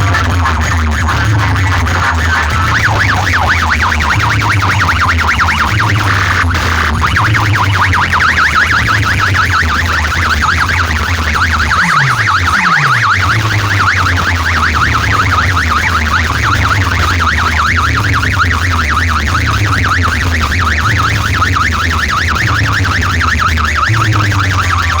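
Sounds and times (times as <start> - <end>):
heavy bass line: 0.0 - 17.2
warbling electronic siren tone: 2.4 - 17.5.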